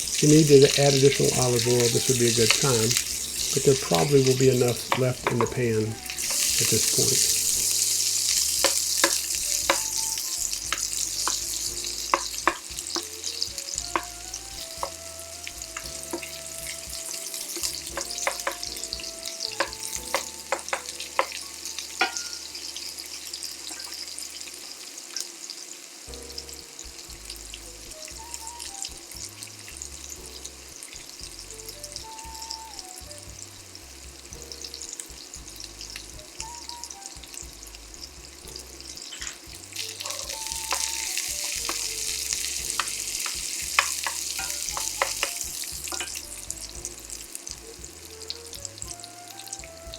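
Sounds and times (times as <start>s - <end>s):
utensil clicking in a pan: 0.0s - 22.5s, 38.9s - 47.4s
onions sizzling in a frying pan: 0.0s - 49.9s.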